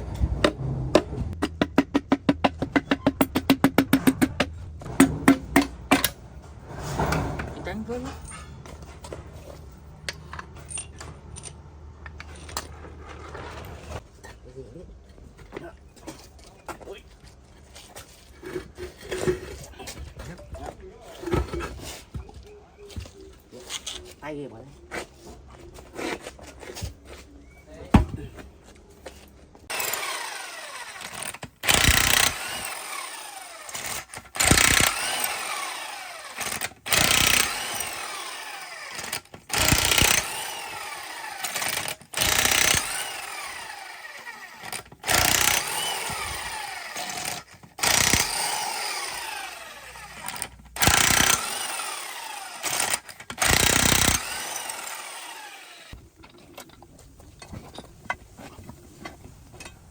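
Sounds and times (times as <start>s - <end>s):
power tool bursts: 29.7s - 56.0s
power tool spinning down whine: 42.2s - 55.9s.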